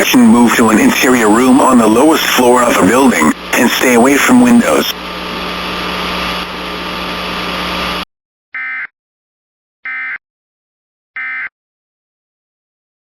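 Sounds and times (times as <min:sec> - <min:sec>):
static hiss: 0:00.0 - 0:08.0
low hum: 0:00.2 - 0:08.0.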